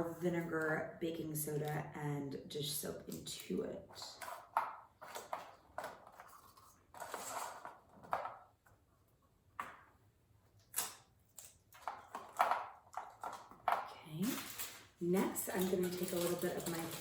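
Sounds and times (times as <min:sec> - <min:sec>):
craft materials rustling and scraping: 0:04.1 - 0:08.5, 0:11.3 - 0:17.0.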